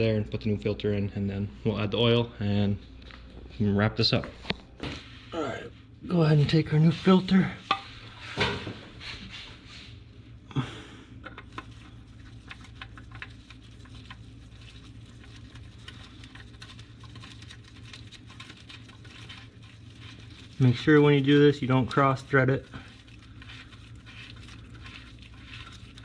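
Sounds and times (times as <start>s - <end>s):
low steady hum: 0.0s - 26.0s
oil filter rustle: 11.2s - 26.0s.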